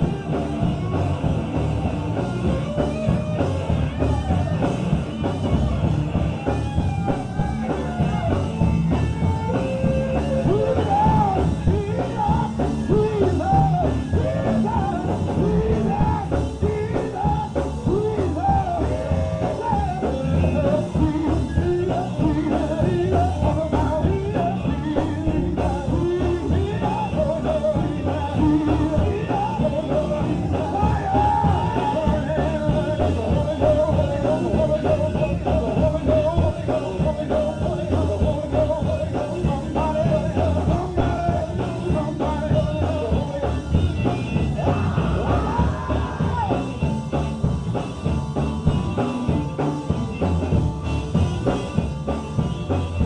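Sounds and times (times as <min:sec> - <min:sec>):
band drums and bass: 0:00.0 - 0:53.0
gospel group singing: 0:10.0 - 0:46.9.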